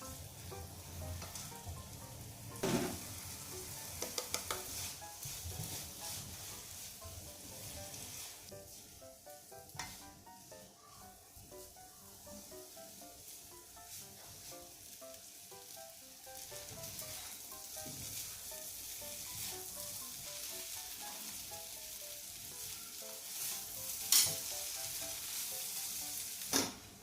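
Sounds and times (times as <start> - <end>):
rice sizzling in a pan: 0.0 - 27.0
utensil striking pan: 2.6 - 3.2, 3.8 - 6.2, 9.7 - 10.1, 24.0 - 24.5.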